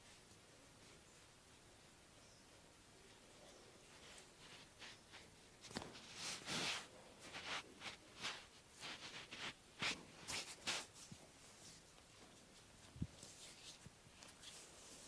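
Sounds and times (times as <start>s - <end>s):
hands rubbing skin: 4.0s - 11.8s, 12.6s - 15.0s.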